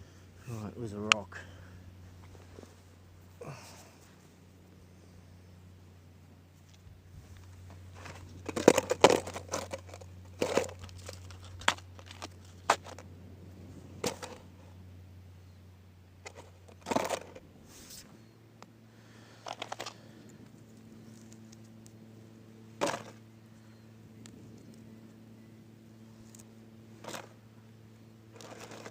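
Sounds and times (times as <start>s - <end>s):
plastic crinkling and clicking: 8.0s - 13.0s, 19.4s - 20.0s.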